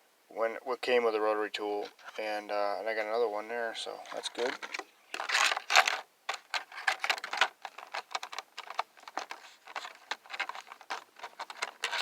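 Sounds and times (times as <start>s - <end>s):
plastic case and bits clicking: 4.1s - 12.0s.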